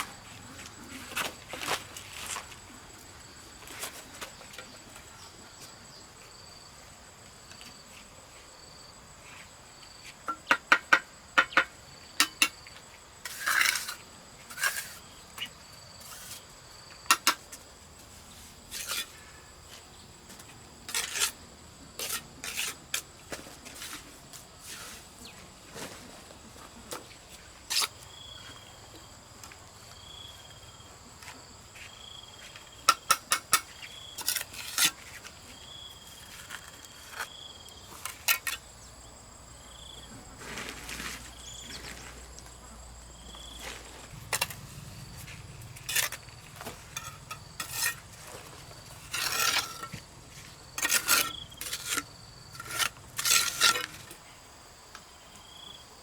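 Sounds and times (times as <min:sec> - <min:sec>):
hand tools clinking on hard material: 0:44.1 - 0:54.2.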